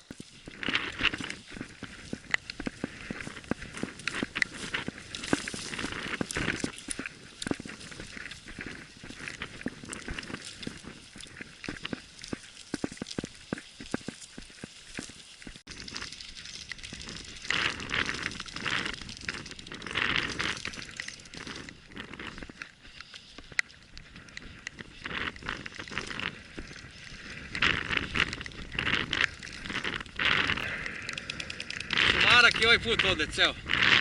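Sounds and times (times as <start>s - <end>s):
crunching and rustling: 0.0s - 34.0s
sharp clicks: 30.6s - 33.4s.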